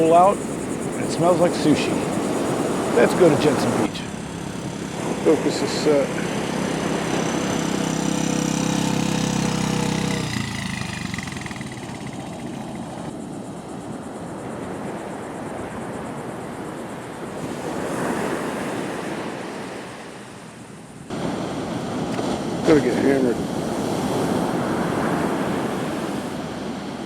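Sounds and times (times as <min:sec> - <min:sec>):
car engine running: 0:00.0 - 0:13.2
ocean surf: 0:00.0 - 0:27.0
wind: 0:00.0 - 0:27.0.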